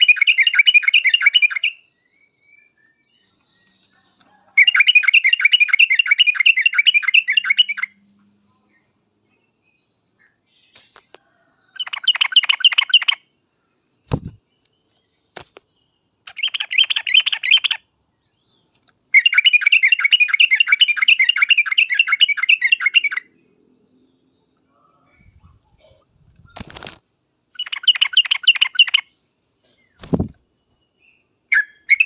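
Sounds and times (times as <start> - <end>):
bulbul chattering song: 0.0 - 2.5, 4.6 - 10.9, 11.8 - 14.5, 15.3 - 17.9, 19.1 - 26.6, 27.4 - 32.0
short thump: 14.1 - 14.4.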